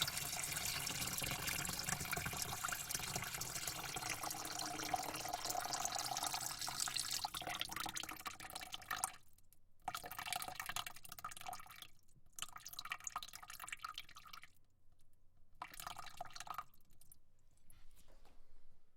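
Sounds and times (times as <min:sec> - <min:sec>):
water spraying into a bucket: 0:00.0 - 0:07.2.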